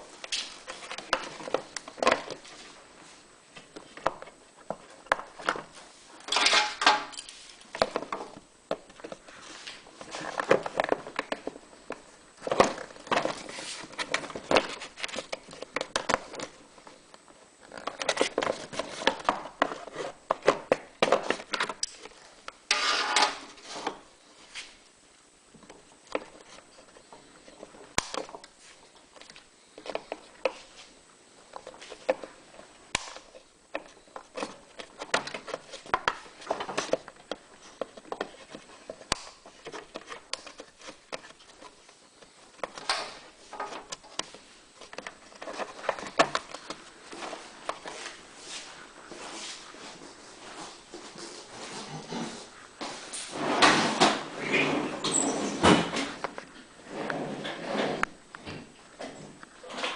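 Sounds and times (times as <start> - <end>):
scraping on plastic: 22.7 - 24.0.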